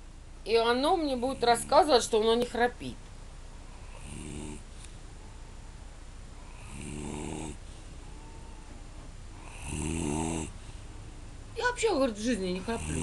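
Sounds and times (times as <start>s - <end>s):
man snoring: 3.8s - 4.6s, 6.4s - 8.6s, 9.4s - 10.6s, 12.8s - 13.0s.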